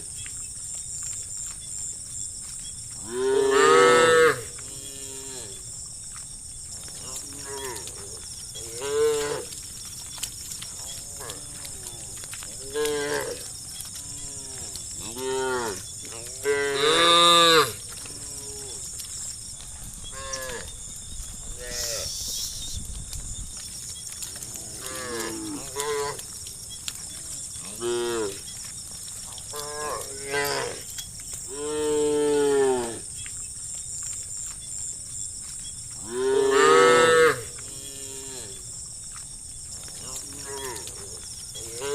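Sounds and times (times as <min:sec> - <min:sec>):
steady high hiss: 0:21.8 - 0:22.8.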